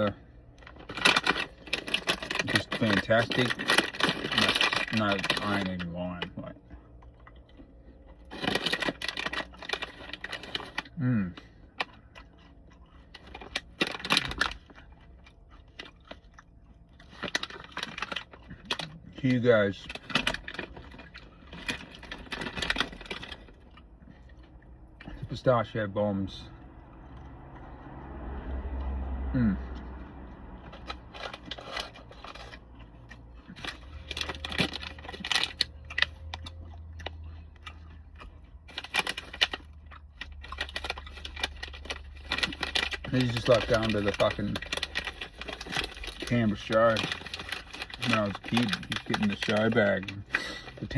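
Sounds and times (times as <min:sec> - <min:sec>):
crunchy snack being chewed: 0:06.6 - 0:19.2, 0:29.6 - 0:50.9.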